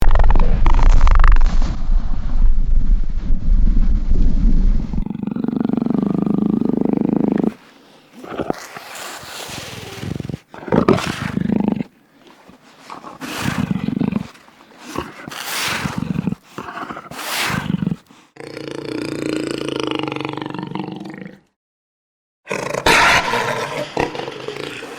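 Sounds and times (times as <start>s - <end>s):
jaguar growling and roaring: 5.0s - 7.6s, 8.2s - 21.4s, 22.5s - 24.9s.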